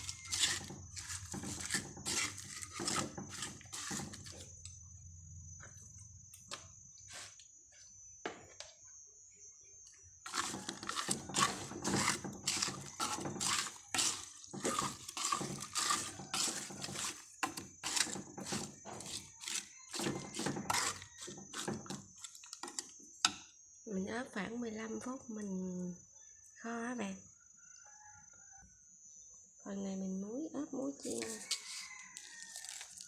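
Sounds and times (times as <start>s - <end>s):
wet squelching strokes: 0.0s - 4.4s, 10.3s - 22.8s, 31.1s - 33.0s.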